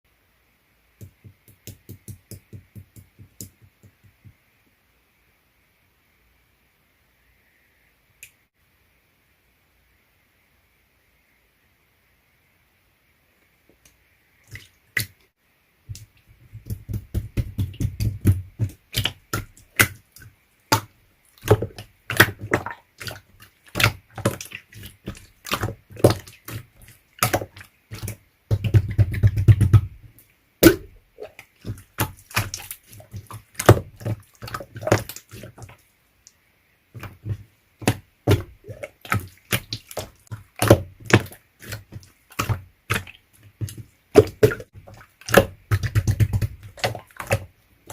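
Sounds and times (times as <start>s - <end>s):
slime squishing with sticky clicks: 15.9s - 36.3s, 37.0s - 47.9s.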